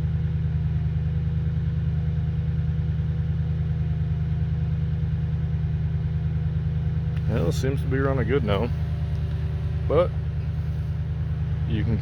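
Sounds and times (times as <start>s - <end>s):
truck engine idling: 0.0s - 12.0s.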